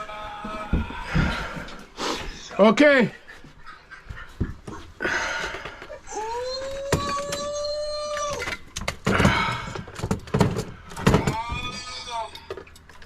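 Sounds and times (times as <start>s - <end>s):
heavy noisy breaths: 0.7s - 2.5s, 5.0s - 6.1s.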